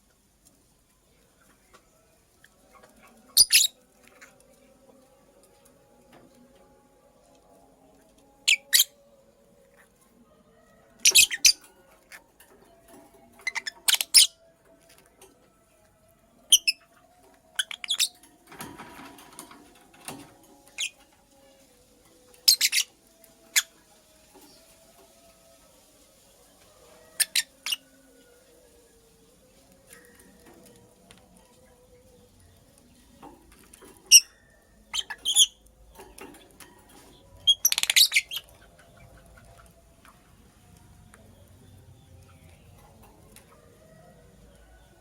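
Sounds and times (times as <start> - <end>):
bird chirping: 17.5 - 18.2, 37.2 - 43.0.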